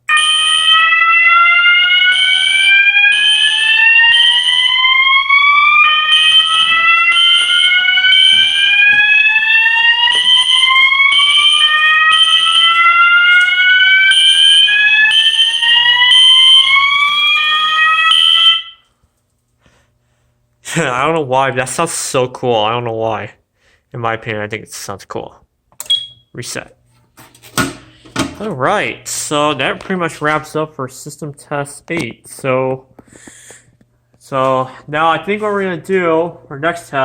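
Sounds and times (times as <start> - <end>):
pulsing high alarm horn: 0.1 - 18.8.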